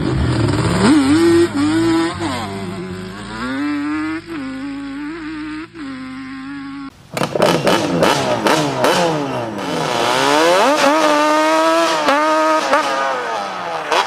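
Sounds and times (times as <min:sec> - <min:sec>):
two-stroke engine revving: 0:00.0 - 0:14.0.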